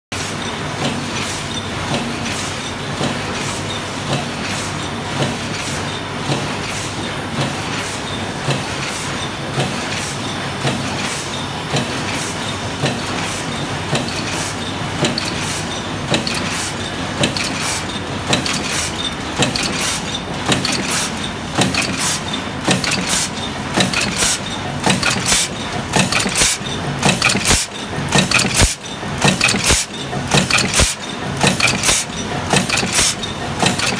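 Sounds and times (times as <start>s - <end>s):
press machine running: 0.2s - 33.9s
sharp clicks and clanks: 13.9s - 33.9s.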